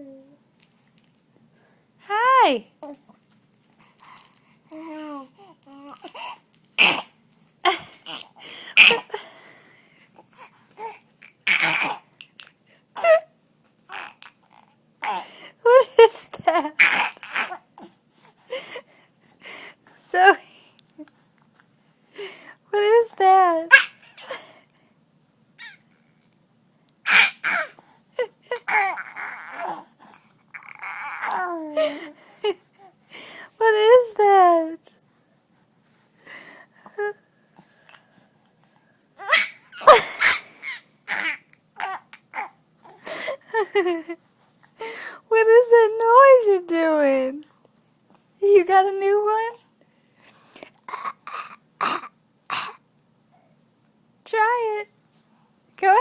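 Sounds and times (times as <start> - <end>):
baby babbling coos: 0.0 - 0.4, 4.7 - 7.0, 10.8 - 12.1, 13.9 - 15.2, 16.8 - 17.6, 27.1 - 27.8, 28.7 - 31.8, 39.2 - 43.0
baby making raspy throat noise: 6.8 - 7.2, 10.8 - 12.6, 50.9 - 52.8
baby squeaking: 27.1 - 27.7, 39.2 - 42.5.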